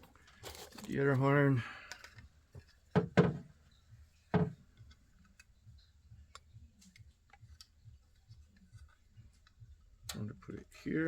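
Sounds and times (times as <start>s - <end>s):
knocks and clicks of handled parts: 1.9s - 3.5s, 4.3s - 5.5s.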